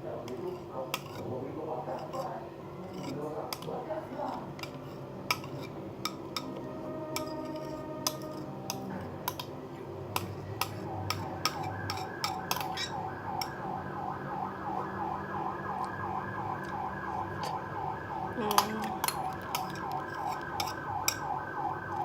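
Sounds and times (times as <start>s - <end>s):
utensils clinking on dishes: 0.2s - 9.5s, 10.2s - 13.6s, 18.4s - 21.3s
warbling siren-like tone: 10.8s - 22.0s.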